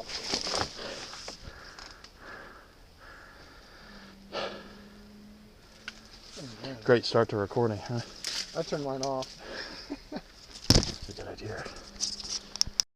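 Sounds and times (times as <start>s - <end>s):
faint steady hum: 0.0s - 12.8s
person breathing hard: 0.6s - 5.1s, 9.4s - 9.9s.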